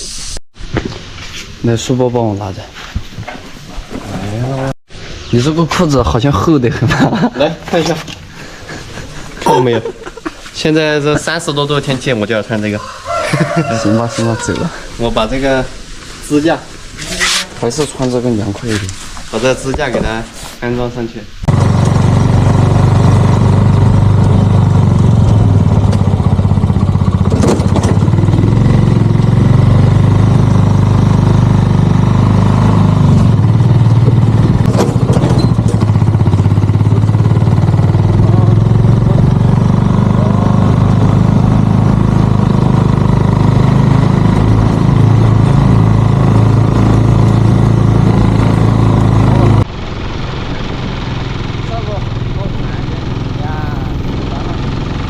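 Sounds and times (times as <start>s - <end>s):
motorcycle engine running: 21.5s - 55.0s.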